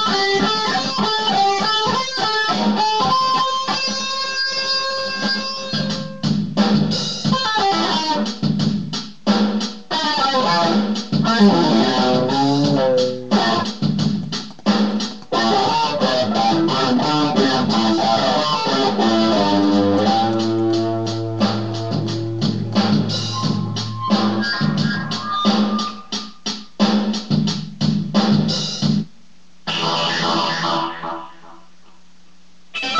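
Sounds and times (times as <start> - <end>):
electric guitar with effect pedal: 0.0 - 6.2, 7.3 - 8.4, 9.9 - 13.8, 15.2 - 26.0, 29.7 - 31.6.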